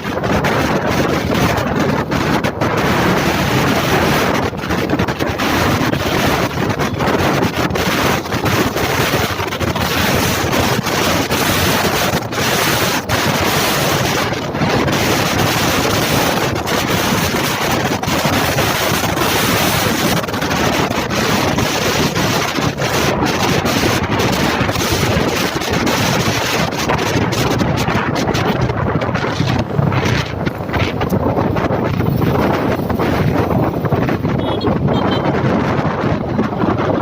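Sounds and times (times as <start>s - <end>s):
wind roaring over microphone: 0.0s - 37.0s.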